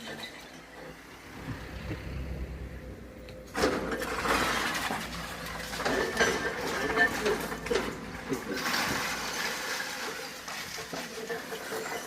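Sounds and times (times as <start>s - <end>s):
excavator engine rumbling: 0.0s - 10.9s
concrete crunching and clattering: 3.5s - 12.0s.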